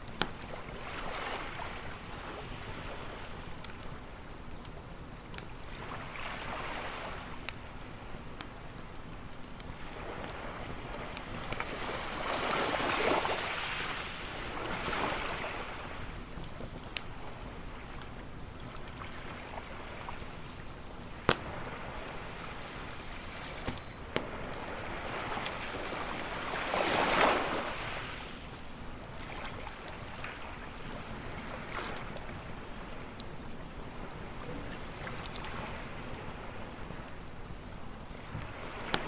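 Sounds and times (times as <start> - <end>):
campfire crackling and popping: 0.0 - 39.0
ocean surf: 5.7 - 7.4, 9.8 - 16.2, 18.9 - 32.9.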